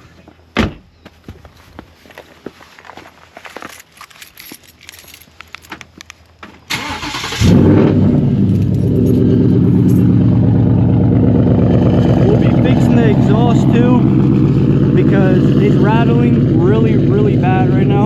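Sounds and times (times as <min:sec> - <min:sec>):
keys jingling: 0:03.4 - 0:06.3, 0:08.2 - 0:10.2
car engine starting and idling: 0:03.7 - 0:18.0.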